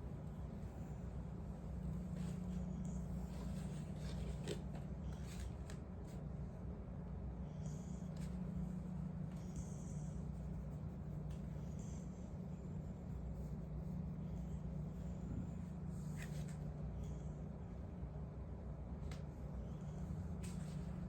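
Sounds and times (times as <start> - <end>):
brush rubbing on fur: 10.1 - 16.7.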